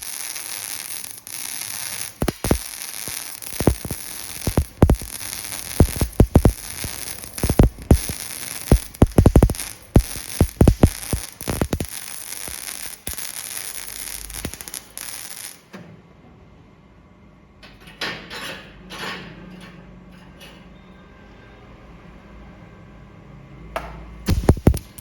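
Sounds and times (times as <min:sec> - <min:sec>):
arc welding crackling: 0:00.0 - 0:15.6, 0:24.3 - 0:25.0
low steady hum: 0:02.0 - 0:13.1.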